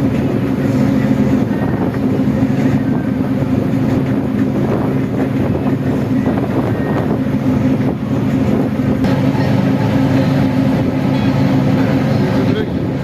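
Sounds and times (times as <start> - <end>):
boat engine drone: 0.0 - 13.0
wind and water noise: 0.0 - 13.0.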